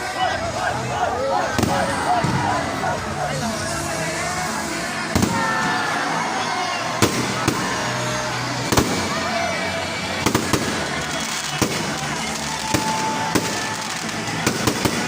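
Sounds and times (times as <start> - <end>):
crowd chatter: 0.0 - 15.0
fireworks bangs: 1.5 - 2.8, 4.9 - 15.0.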